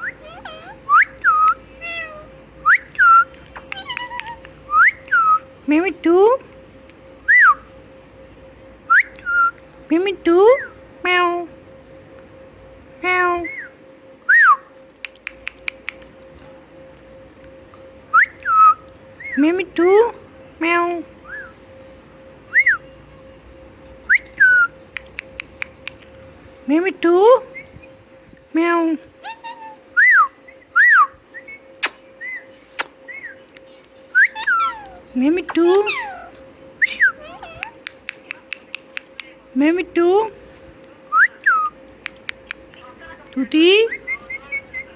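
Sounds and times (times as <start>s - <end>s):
parrot chirps: 0.0s - 5.5s, 14.5s - 16.2s, 24.1s - 26.1s, 29.2s - 33.5s, 34.1s - 39.4s, 41.4s - 43.2s, 43.8s - 44.9s
parrot whistling: 0.0s - 5.5s, 18.1s - 19.4s, 21.2s - 21.6s, 24.1s - 26.0s, 29.2s - 33.4s, 34.1s - 39.2s, 43.8s - 44.9s
parrot sharp clicks: 15.0s - 16.1s, 24.9s - 26.0s, 37.6s - 39.4s, 42.0s - 42.6s.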